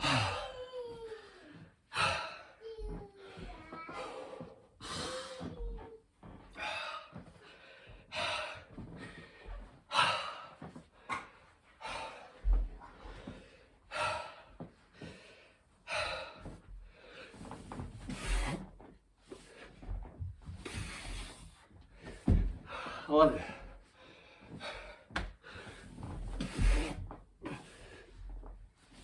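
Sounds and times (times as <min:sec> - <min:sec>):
man breathing hard and gasping: 0:00.0 - 0:02.6, 0:03.9 - 0:05.5, 0:06.6 - 0:17.4, 0:22.0 - 0:28.2.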